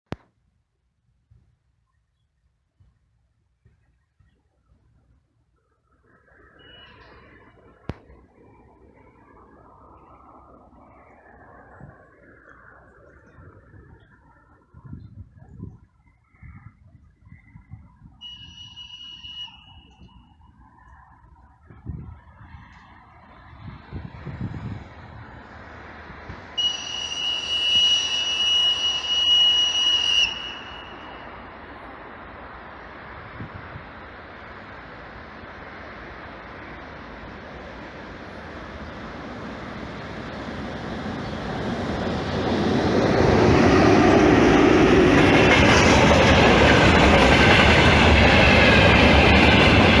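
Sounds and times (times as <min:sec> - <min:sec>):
locomotive whistle blast: 0:06.6 - 0:07.2, 0:18.2 - 0:20.2, 0:26.6 - 0:31.4
train wheels rushing on rails: 0:18.2 - 0:50.0
clickety-clack over rail joints: 0:35.4 - 0:50.0.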